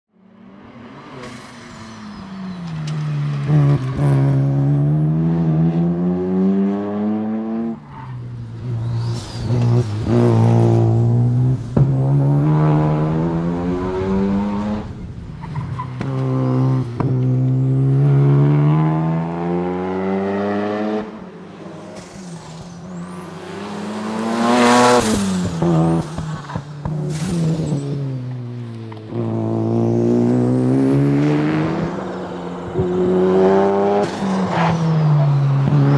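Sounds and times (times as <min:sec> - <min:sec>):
rotary engine revving hard: 0:08.6 - 0:15.0, 0:16.0 - 0:28.2, 0:29.1 - 0:35.9.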